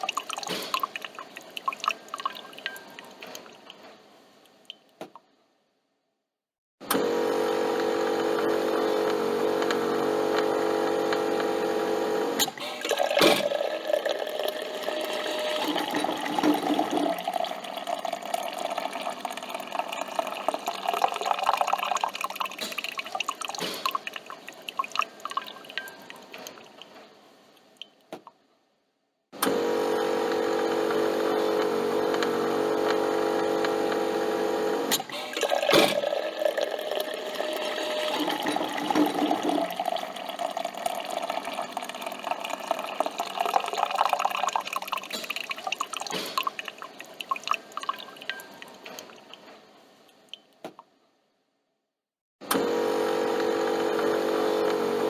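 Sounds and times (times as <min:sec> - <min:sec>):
coffee streaming and dripping: 0:00.0 - 0:05.0, 0:07.3 - 0:28.3, 0:29.6 - 0:50.8, 0:52.6 - 0:55.0
coffee machine hum: 0:06.8 - 0:22.4, 0:29.4 - 0:45.0, 0:52.4 - 0:55.0.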